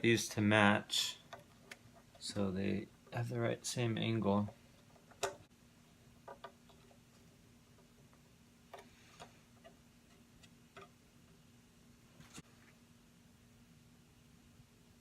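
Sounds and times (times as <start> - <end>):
low steady hum: 0.0 - 15.0
faint metal clicks and taps: 1.2 - 2.2, 4.4 - 5.5.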